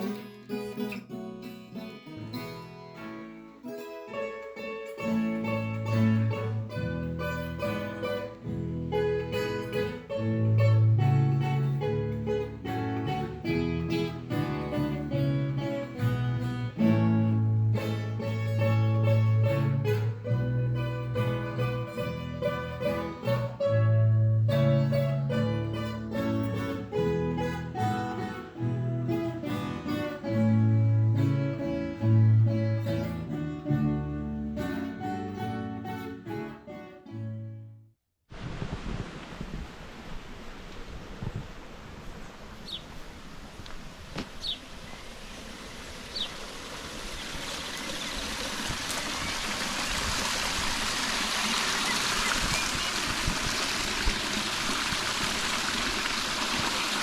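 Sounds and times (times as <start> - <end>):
acoustic guitar playing: 0.0 - 37.9
bowed string instrument: 3.6 - 37.7
steady bass line: 5.5 - 35.9.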